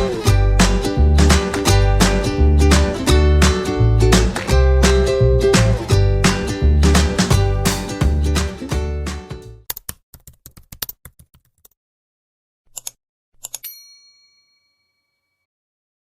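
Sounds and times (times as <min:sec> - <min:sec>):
plucked-string music: 0:00.0 - 0:09.6
bell-like ding: 0:13.6 - 0:15.5.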